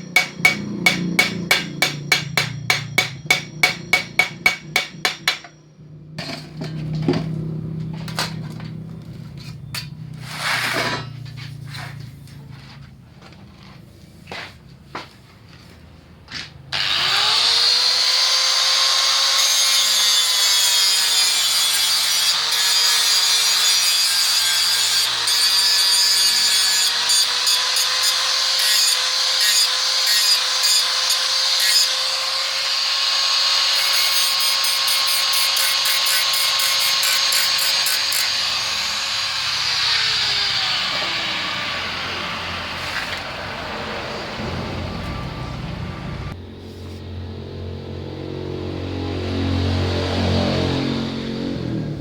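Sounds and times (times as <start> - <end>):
metal being worked hissing: 0.0 - 5.5, 33.5 - 43.3
power tool motor: 16.7 - 43.3.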